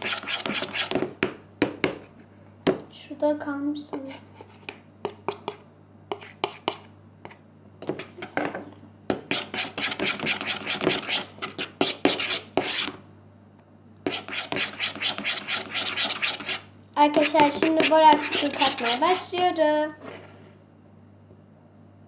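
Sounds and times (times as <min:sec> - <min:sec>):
spoon stirring slime: 0:04.0 - 0:08.4, 0:09.1 - 0:13.0, 0:14.1 - 0:19.3.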